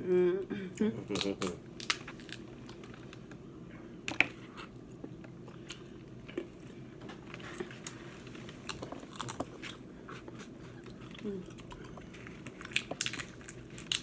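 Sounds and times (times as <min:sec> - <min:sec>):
person chewing seafood: 0:07.5 - 0:14.0.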